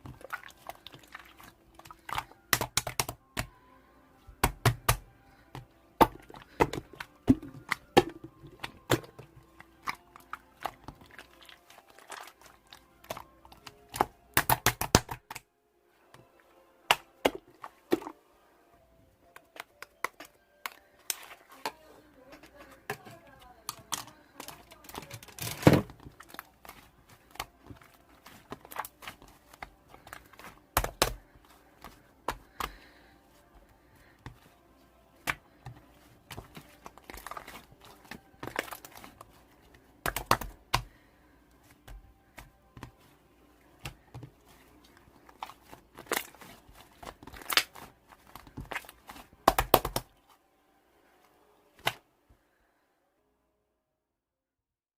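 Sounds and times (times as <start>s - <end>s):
handling clicks and knocks: 19.3s - 32.8s.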